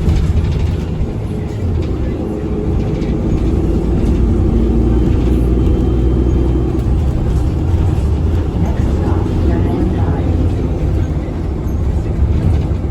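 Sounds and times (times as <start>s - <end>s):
bus engine hum: 0.0s - 12.9s.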